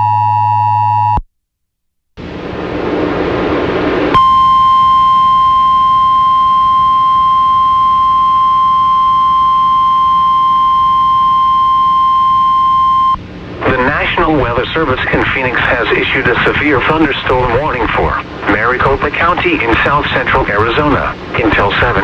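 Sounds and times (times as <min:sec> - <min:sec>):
static hiss: 0:13.2 - 0:22.0.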